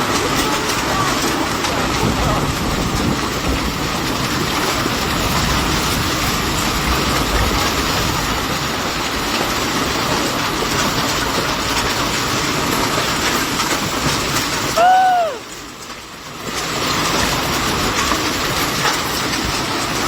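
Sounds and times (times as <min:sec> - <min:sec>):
thunderstorm roar: 0:00.0 - 0:15.6.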